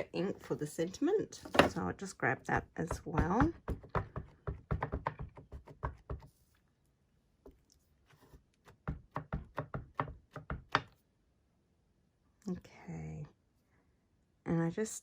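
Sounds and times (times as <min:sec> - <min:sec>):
rubber stamp tapping on ink pad: 0:02.8 - 0:06.3.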